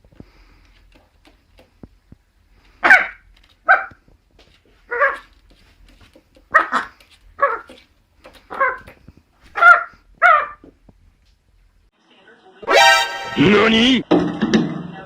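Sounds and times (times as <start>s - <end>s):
dog barking: 2.8s - 4.0s, 4.9s - 5.3s, 6.5s - 7.8s, 8.5s - 8.8s, 9.5s - 10.6s.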